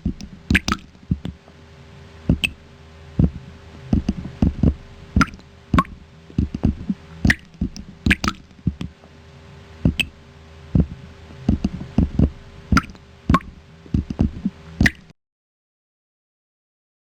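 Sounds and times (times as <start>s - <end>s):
mouth water-drop pops: 0.0s - 1.5s, 2.3s - 2.6s, 3.2s - 9.0s, 9.9s - 10.2s, 10.8s - 15.1s.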